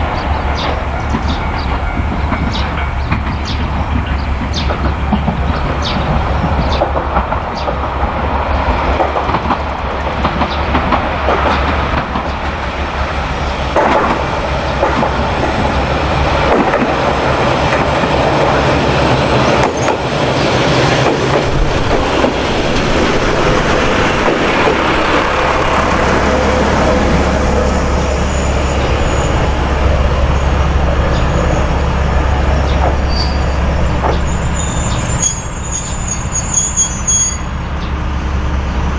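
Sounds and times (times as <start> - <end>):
train wheels on rail: 0.0 - 38.9
diesel engine drone: 20.6 - 35.2, 37.5 - 38.9.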